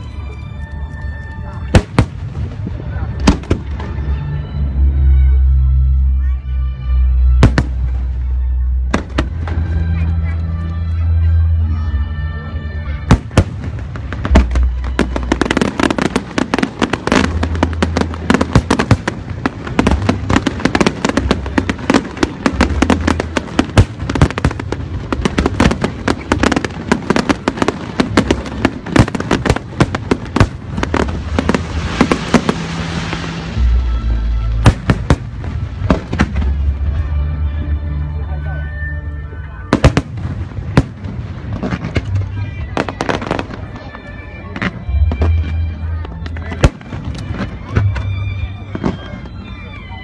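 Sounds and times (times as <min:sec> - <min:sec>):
fireworks bangs and crackling: 0:01.1 - 0:04.2, 0:07.4 - 0:10.5, 0:13.0 - 0:37.2, 0:39.6 - 0:49.9
hissing crackle: 0:14.1 - 0:33.9.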